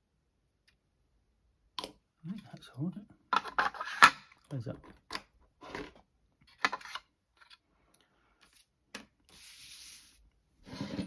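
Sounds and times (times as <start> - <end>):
plastic parts rubbing and scraping: 3.4 - 4.2.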